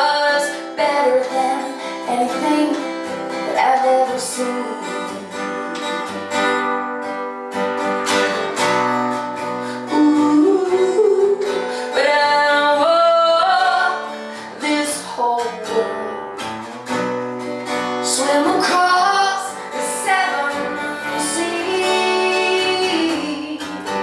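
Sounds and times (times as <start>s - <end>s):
woman singing: 0.0s - 6.2s, 9.4s - 16.5s, 17.9s - 24.0s
strummed acoustic guitar: 0.0s - 24.0s.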